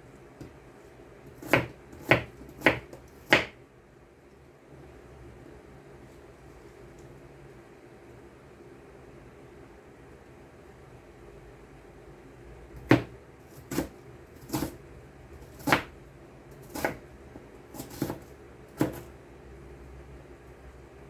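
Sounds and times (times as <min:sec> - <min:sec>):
knife chopping on cutting board: 0:01.3 - 0:03.6, 0:12.8 - 0:14.8, 0:15.4 - 0:15.9, 0:16.6 - 0:17.0, 0:17.7 - 0:19.1.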